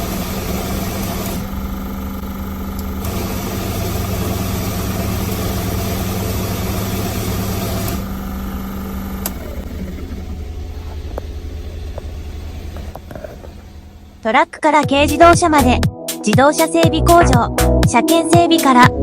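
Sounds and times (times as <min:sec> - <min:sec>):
small engine idling: 0:00.0 - 0:15.1
steady hum: 0:00.0 - 0:15.8.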